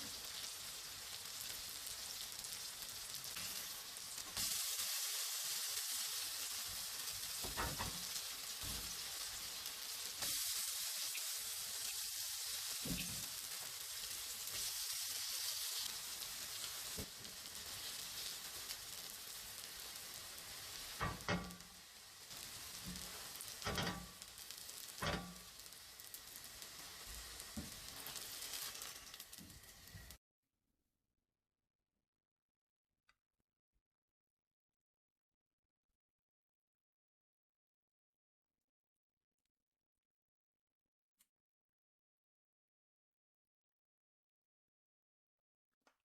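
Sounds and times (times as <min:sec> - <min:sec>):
food sizzling in a pan: 0:00.0 - 0:30.2
utensil knocking on pan: 0:07.4 - 0:08.0, 0:21.0 - 0:21.6.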